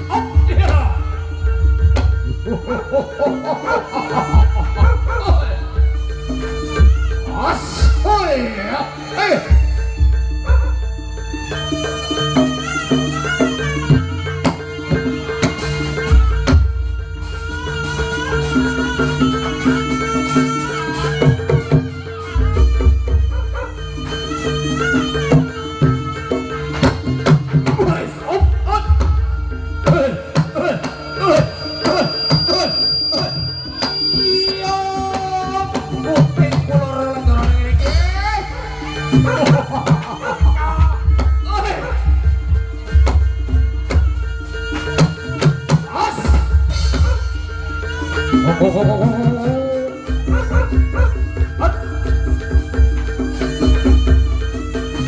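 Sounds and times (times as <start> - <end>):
drum strokes: 0.0 - 55.0
gamelan held pitched notes: 0.0 - 55.0
steady held tone: 28.2 - 39.4
voice-like sliding line: 29.9 - 37.2.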